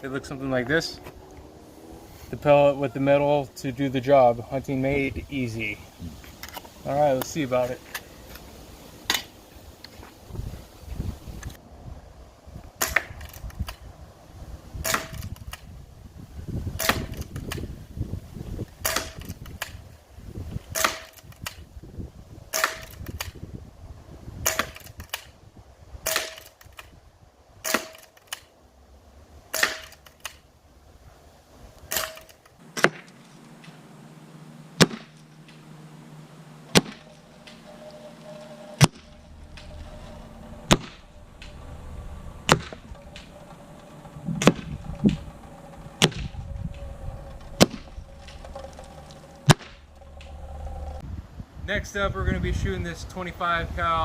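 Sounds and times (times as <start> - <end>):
air rifle shots cracking: 34.8 - 35.5, 36.7 - 37.1.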